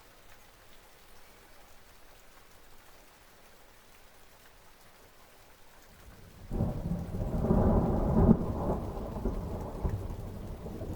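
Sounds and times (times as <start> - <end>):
steady rain: 0.0 - 10.9
deep thunder rumble: 6.3 - 10.9.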